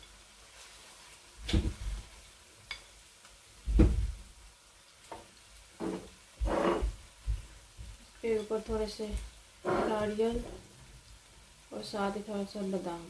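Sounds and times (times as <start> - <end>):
spoon scraping a pan: 5.8 - 7.0, 9.6 - 10.6.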